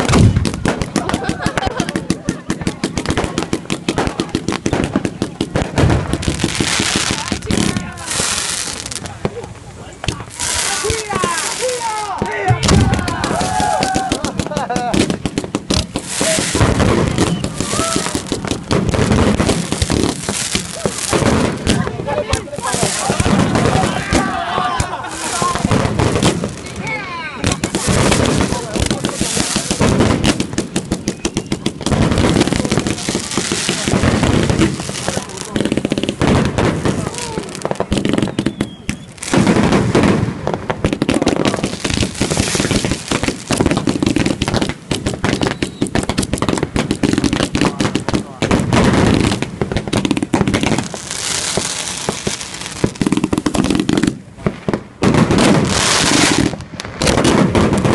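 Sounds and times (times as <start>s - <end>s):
fireworks crackling and popping: 0.0s - 57.9s
fireworks whistling: 0.0s - 57.9s.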